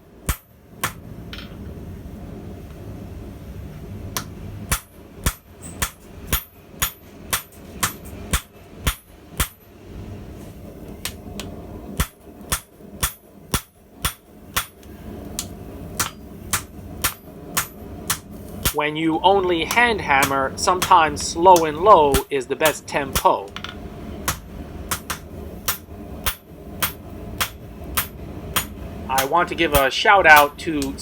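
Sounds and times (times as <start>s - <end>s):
hammer blows on anvil: 24.3s - 30.9s.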